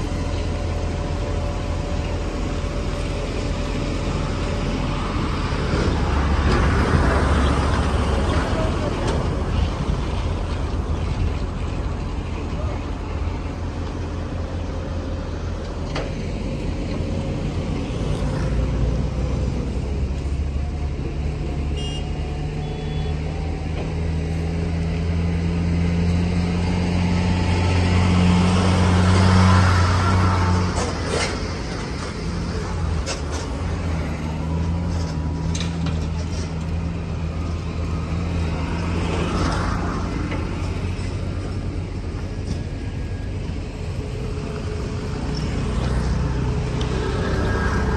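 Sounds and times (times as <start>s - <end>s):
low diesel engine hum: 0.0s - 47.9s
vehicle passing close: 16.1s - 42.3s.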